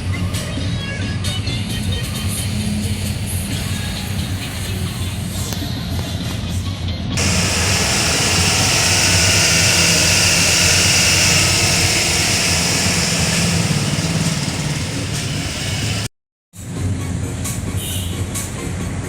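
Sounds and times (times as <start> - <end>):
low engine hum: 7.2 - 16.1.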